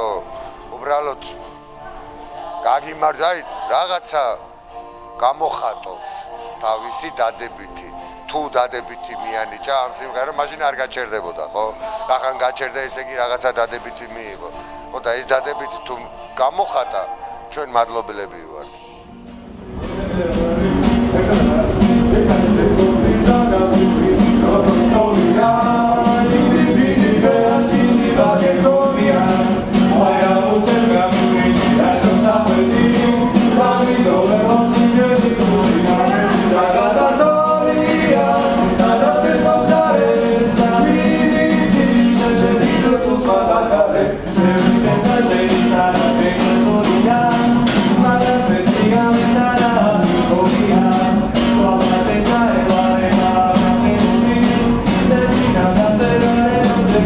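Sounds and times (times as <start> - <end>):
guitar: 0.0 - 57.0
person singing: 5.1 - 57.0
steady beat: 19.2 - 28.1.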